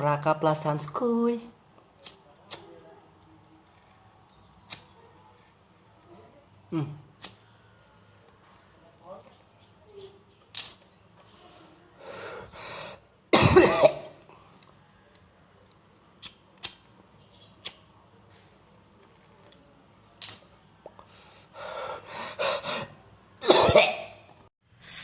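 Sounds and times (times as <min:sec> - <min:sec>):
man coughing: 0:23.4 - 0:24.1.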